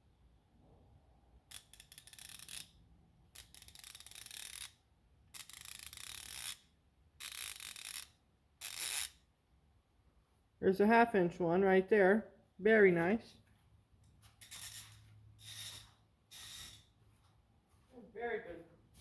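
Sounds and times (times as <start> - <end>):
ratchet clicking: 1.5 - 9.2.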